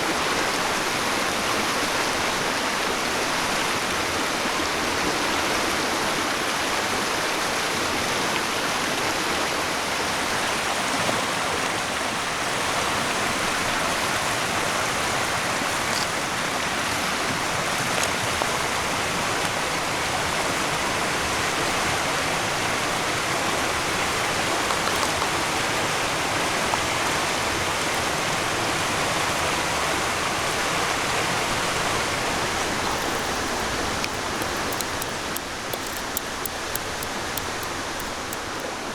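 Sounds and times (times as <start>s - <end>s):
faint ticks: 32.8s - 38.8s.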